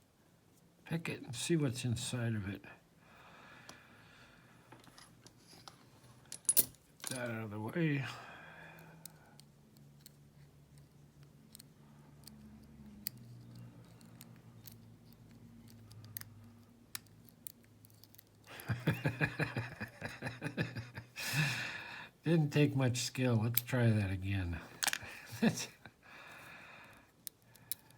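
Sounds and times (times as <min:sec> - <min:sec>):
lock pick clicking in lock: 0:24.8 - 0:25.1.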